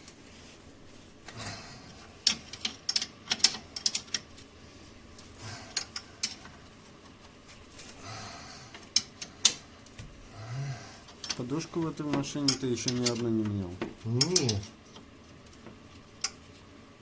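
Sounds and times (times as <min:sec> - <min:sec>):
metallic clicks of tools and bolts: 0:02.2 - 0:04.3, 0:11.0 - 0:11.5, 0:12.2 - 0:13.3, 0:14.0 - 0:15.1.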